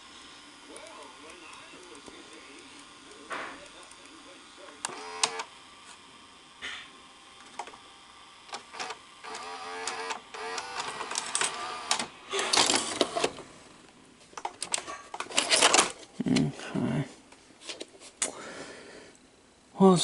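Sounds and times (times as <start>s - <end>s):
tape mechanism clicking and clatter: 8.5s - 13.4s, 14.4s - 16.1s.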